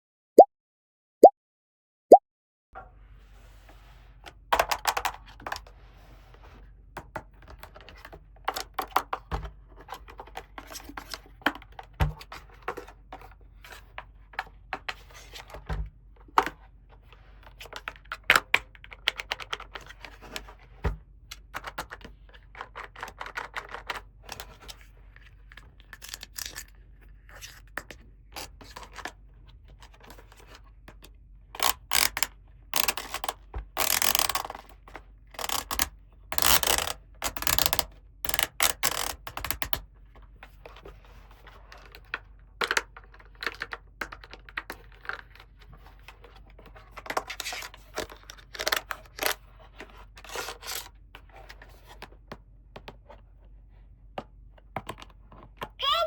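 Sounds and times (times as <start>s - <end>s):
plastic toy pieces clicking: 25.9s - 26.7s, 31.6s - 34.7s, 35.4s - 39.8s.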